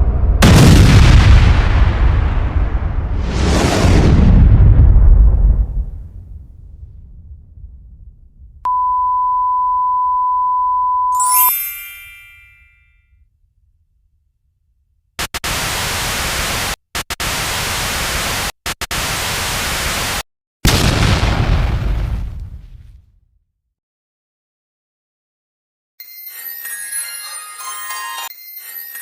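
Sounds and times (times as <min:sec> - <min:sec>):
pure beep tone: 0:08.7 - 0:12.7
bell-like ding: 0:10.3 - 0:13.0, 0:26.0 - 0:29.0
white-noise static: 0:15.2 - 0:20.2.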